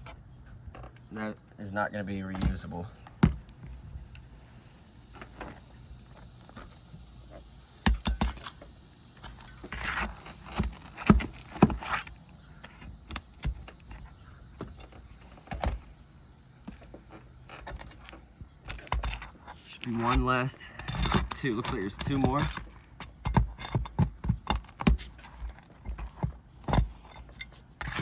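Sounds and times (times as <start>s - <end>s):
flat bar scraping on shingles: 6.3s - 28.0s.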